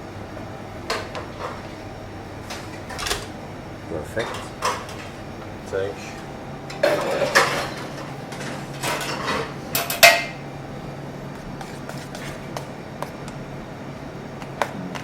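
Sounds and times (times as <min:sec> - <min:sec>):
steady low hum: 0:00.0 - 0:15.0
dishes and utensils clattering: 0:04.2 - 0:05.2, 0:06.7 - 0:10.4.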